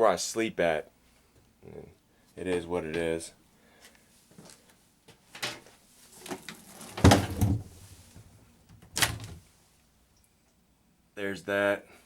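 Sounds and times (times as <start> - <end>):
faint rustling: 3.7 - 9.8
knocks and bumps: 6.9 - 9.4
heavy deep thud: 7.0 - 7.9.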